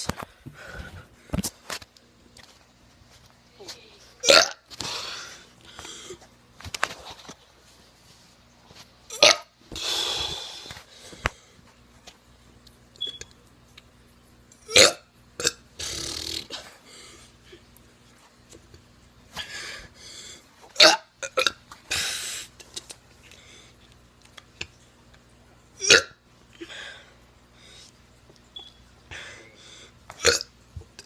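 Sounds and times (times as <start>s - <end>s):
person burping: 4.2s - 4.7s, 9.1s - 9.5s, 14.6s - 16.6s, 20.8s - 21.6s, 25.8s - 26.2s, 30.2s - 30.5s.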